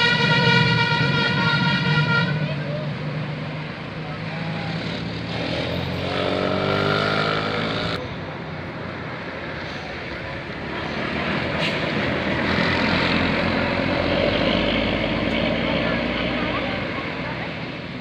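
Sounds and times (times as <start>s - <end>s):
musical bus horn chord: 0.0s - 2.6s
bus engine running: 0.0s - 18.0s
street noise: 0.0s - 18.0s.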